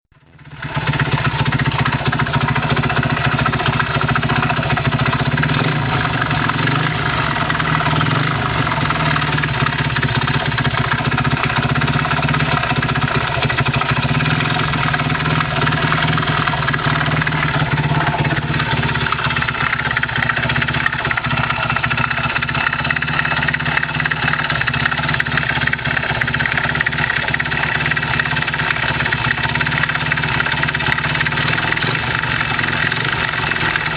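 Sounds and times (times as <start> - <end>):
motorcycle engine idling: 0.1 - 33.9.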